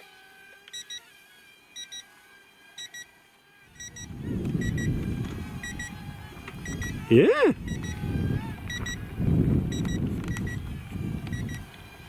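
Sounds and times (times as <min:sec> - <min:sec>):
wind rumble on microphone: 0:03.8 - 0:12.0
short double beeps: 0:07.7 - 0:08.0, 0:08.7 - 0:09.0, 0:09.7 - 0:10.5.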